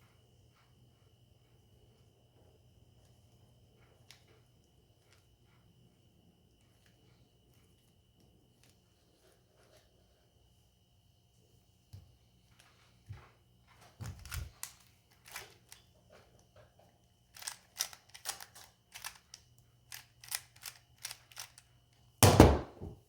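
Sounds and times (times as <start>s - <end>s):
plastic puzzle cube clicking: 17.4s - 21.6s.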